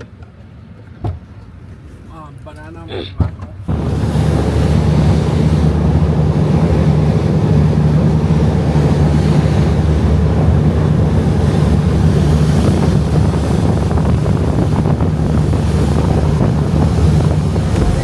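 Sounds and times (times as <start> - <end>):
boat engine drone: 3.7 - 18.0
water rushing past hull: 3.7 - 18.0
wind buffeting microphone: 3.7 - 18.0.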